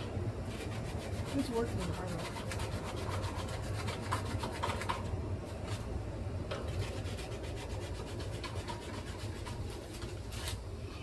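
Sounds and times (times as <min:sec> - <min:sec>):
fan motor humming: 0:00.0 - 0:11.0.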